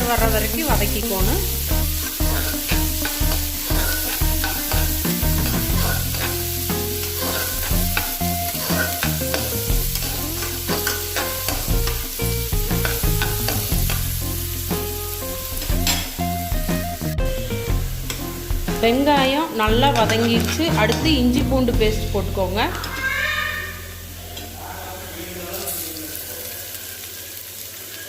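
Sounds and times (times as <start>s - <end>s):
onions sizzling in hot oil: 0.0s - 28.0s
spatula scraping pan: 1.6s - 12.0s, 12.7s - 14.2s.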